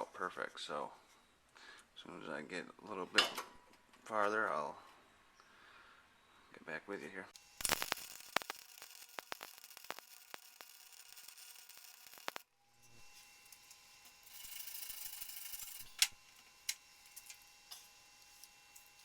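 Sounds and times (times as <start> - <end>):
sharp clicks from tools: 13.2 - 19.0.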